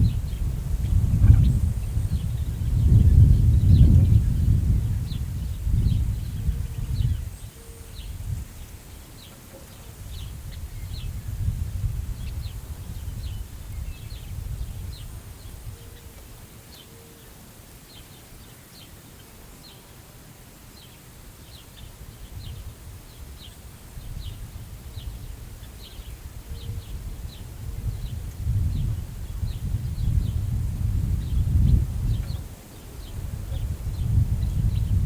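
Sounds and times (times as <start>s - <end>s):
wind gusting over microphone: 0.0s - 8.9s, 9.9s - 15.9s, 22.0s - 35.0s.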